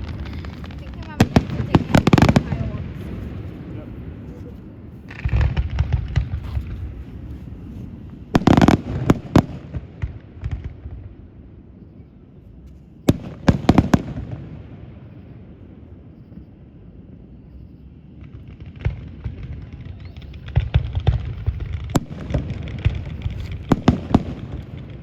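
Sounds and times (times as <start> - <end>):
fireworks crackling pops: 0.0 - 11.0, 18.2 - 25.0
fireworks low rumbling booms: 0.0 - 25.0.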